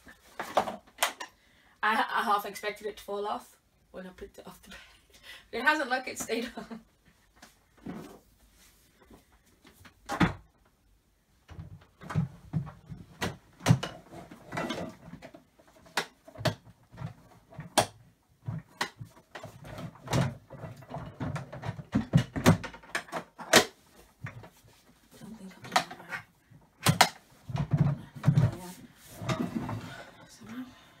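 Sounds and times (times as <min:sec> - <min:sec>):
plastic parts knocking and clattering: 0:00.3 - 0:01.3, 0:11.4 - 0:24.7, 0:25.5 - 0:29.9.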